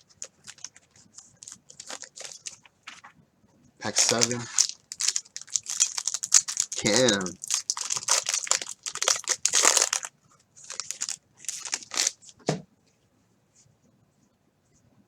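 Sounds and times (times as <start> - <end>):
wrapper being torn and crumpled: 0.0 - 3.0, 3.8 - 12.3.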